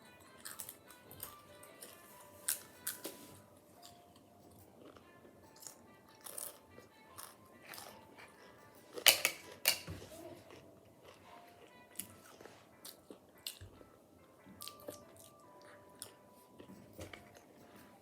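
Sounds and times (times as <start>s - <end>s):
faint background music: 0.0s - 18.0s
potato chips crunching: 4.8s - 9.9s.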